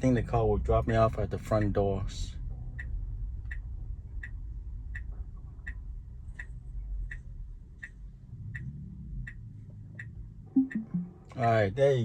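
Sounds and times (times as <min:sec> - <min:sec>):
turn signal ticking: 0:01.4 - 0:01.8, 0:02.5 - 0:11.6.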